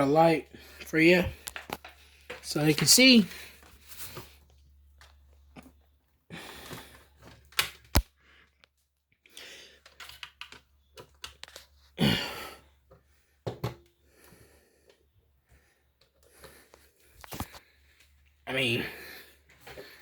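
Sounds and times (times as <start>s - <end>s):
toy cars being handled: 9.8s - 12.0s.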